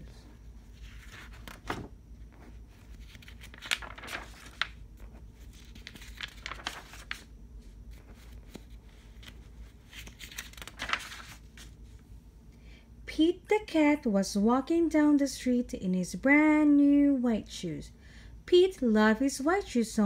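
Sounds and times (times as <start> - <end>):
book pages rustling and turning: 0.2 - 12.0.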